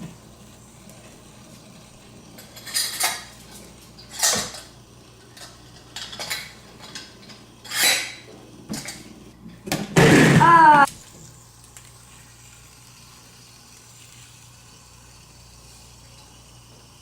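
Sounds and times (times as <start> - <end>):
metal spinner clattering on surface: 4.1 - 4.7.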